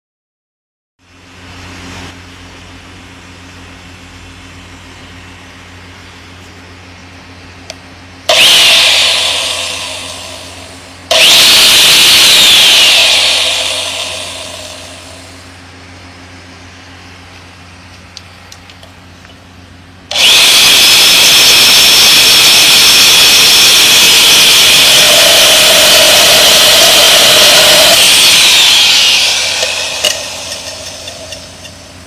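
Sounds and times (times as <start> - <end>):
lower hum: 1.0 - 32.0
rebar cutter motor whining: 8.2 - 15.7, 20.0 - 32.0.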